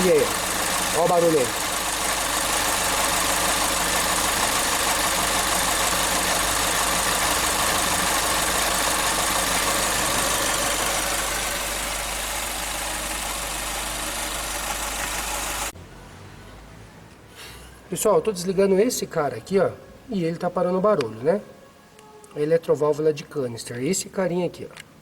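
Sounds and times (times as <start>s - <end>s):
car engine idling: 0.0s - 15.8s.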